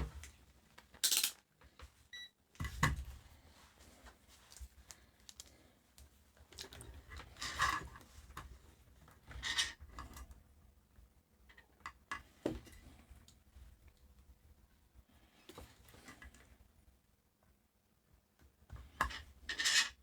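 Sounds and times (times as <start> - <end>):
tools clicking and knocking: 1.0 - 1.4.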